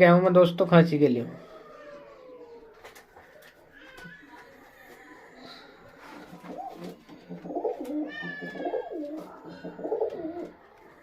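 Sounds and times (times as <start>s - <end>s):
pigeons cooing: 1.3s - 11.0s.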